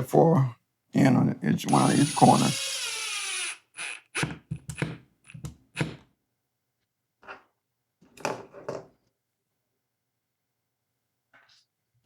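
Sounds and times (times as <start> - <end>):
knocks and clicks of drill handling: 1.8 - 6.1.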